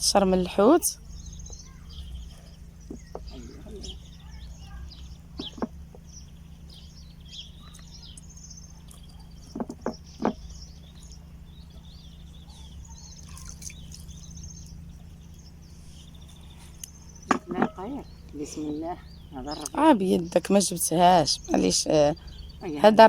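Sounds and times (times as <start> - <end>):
small birds chirping: 0.0 - 23.0
sharp knocks: 5.4 - 6.0, 9.4 - 10.5.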